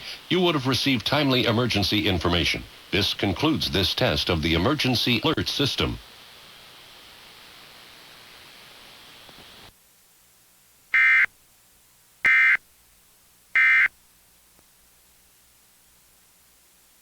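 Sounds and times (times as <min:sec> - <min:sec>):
steady hiss: 0:00.0 - 0:17.0
screechy data bursts: 0:11.0 - 0:11.3, 0:13.6 - 0:13.9.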